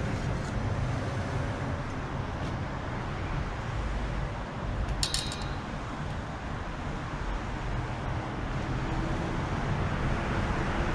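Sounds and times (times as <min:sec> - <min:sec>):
rapid clinking: 0:05.0 - 0:06.1.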